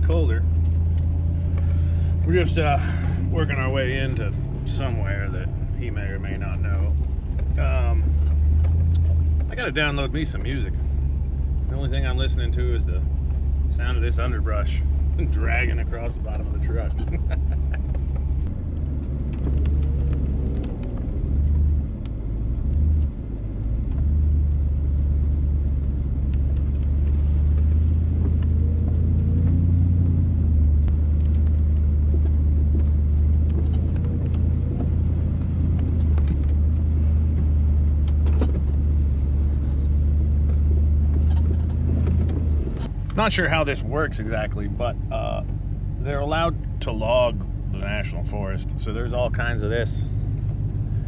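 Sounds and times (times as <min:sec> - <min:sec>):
underbrush scraping truck underside: 0:00.0 - 0:21.8, 0:31.1 - 0:44.7
truck engine rumble: 0:00.0 - 0:51.0.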